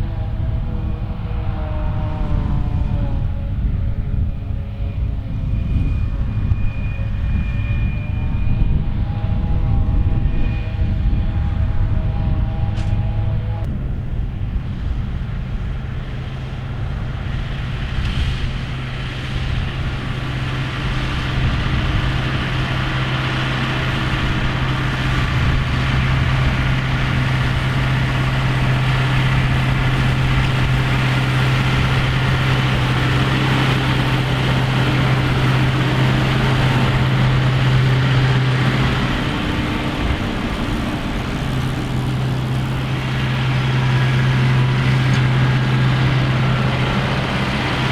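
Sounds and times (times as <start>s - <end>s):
tractor engine running: 10.4s - 47.9s.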